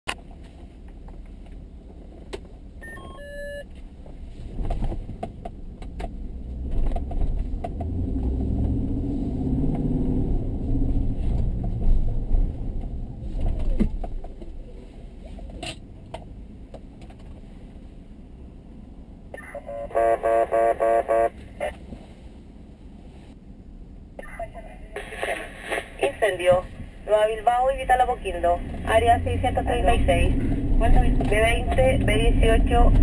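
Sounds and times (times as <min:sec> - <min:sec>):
vehicle engine rumbling: 0:00.0 - 0:33.0
electronic beeps: 0:02.8 - 0:03.6.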